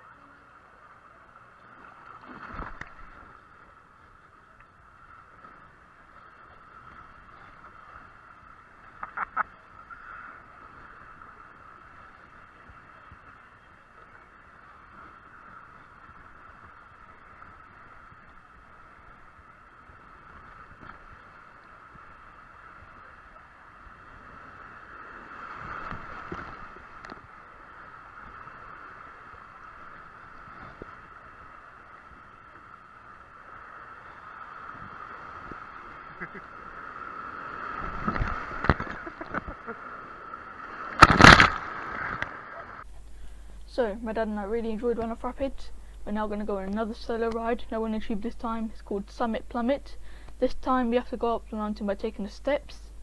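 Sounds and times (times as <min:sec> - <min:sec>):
water rushing along tube slide: 0:33.2 - 0:43.2.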